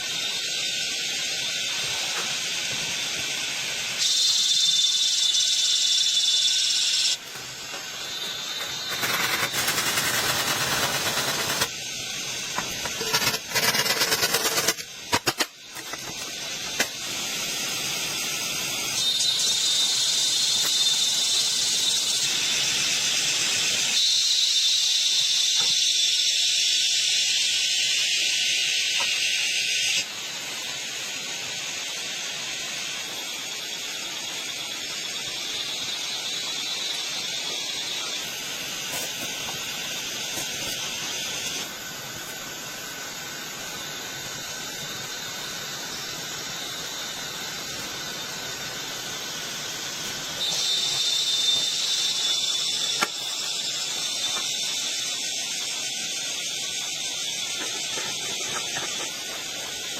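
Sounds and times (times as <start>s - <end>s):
high-pitched hiss: 0.0s - 59.9s.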